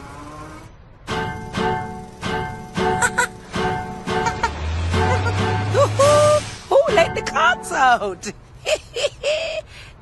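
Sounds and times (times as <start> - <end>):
steel drum music: 1.1 - 8.0.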